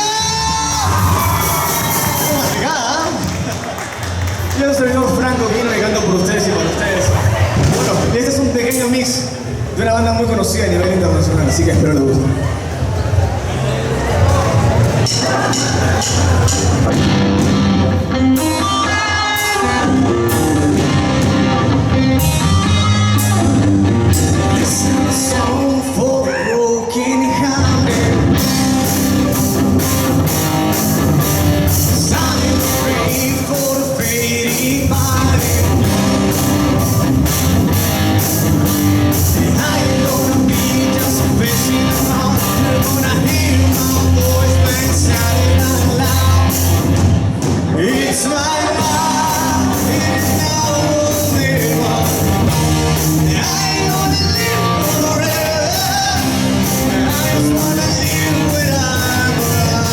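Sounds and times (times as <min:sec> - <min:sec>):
man singing: 0:00.0 - 0:03.2, 0:18.4 - 0:20.7, 0:22.3 - 0:29.6, 0:31.2 - 0:37.1, 0:38.7 - 0:47.0, 0:47.7 - 0:59.9
drum kit beat: 0:00.0 - 0:03.5, 0:14.9 - 0:25.3, 0:27.8 - 0:59.9
bass guitar: 0:00.0 - 0:08.9, 0:11.1 - 0:26.3, 0:27.1 - 0:59.9
electric guitar: 0:14.2 - 0:59.9.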